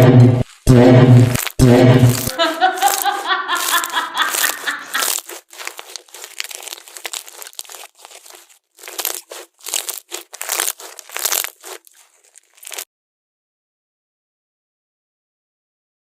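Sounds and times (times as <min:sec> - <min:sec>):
slime crackling and crunching: 0:00.4 - 0:12.9.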